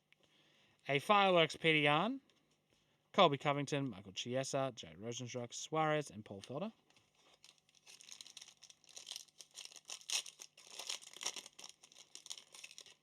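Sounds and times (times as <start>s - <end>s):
wrapping crinkling and rustling: 6.3s - 13.0s.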